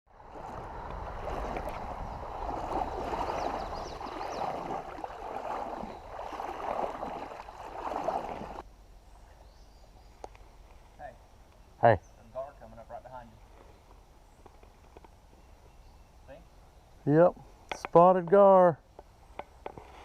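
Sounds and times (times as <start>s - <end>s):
creek water gurgling over rocks: 0.2s - 8.6s.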